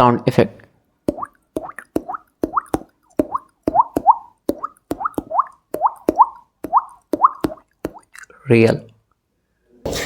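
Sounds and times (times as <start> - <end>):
beatboxed water drip plops: 1.0 - 8.3.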